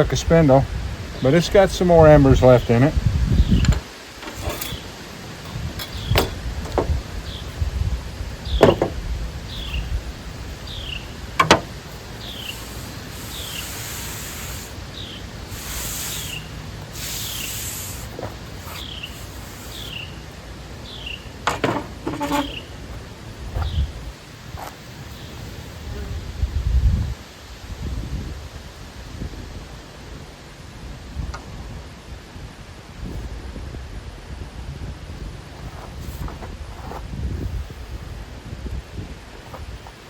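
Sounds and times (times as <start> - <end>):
hissy bursts: 2.6 - 22.9
bird chirping: 5.8 - 18.0, 18.6 - 22.8, 23.6 - 24.0
sharp knocks: 8.6 - 9.0, 11.4 - 11.7.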